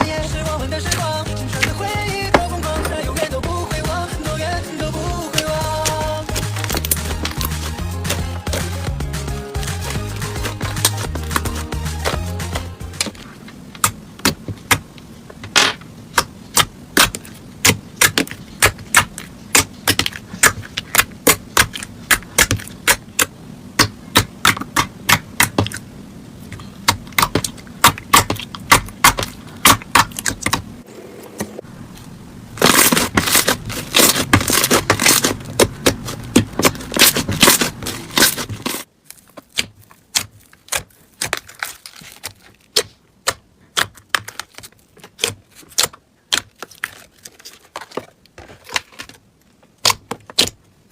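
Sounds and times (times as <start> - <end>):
slime crackling: 4.9 - 14.8, 32.6 - 49.1.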